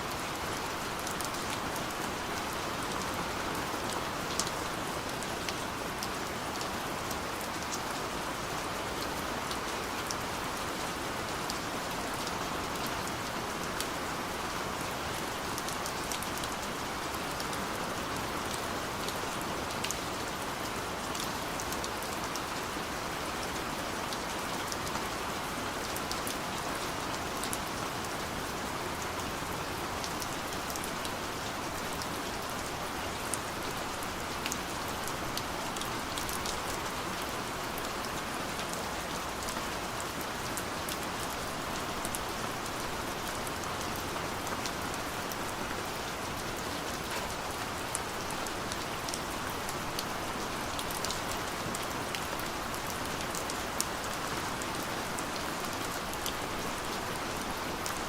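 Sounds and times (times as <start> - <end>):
light rain falling: 0.0 - 58.0
raindrops pattering: 25.7 - 58.0.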